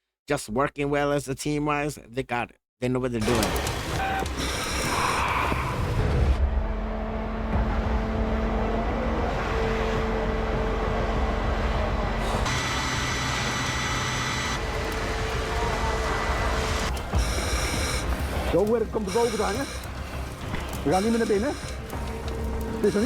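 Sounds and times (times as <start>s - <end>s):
fire engine engine droning: 6.4s - 23.0s.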